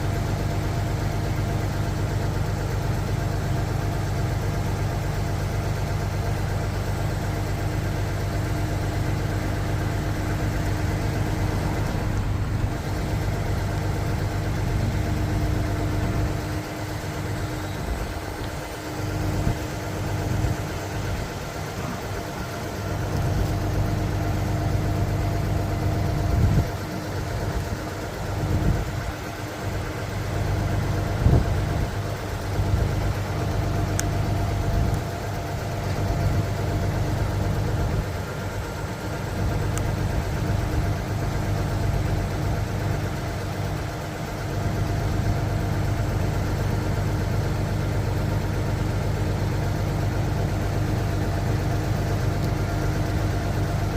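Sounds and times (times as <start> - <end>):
diesel engine humming: 0.0 - 53.9.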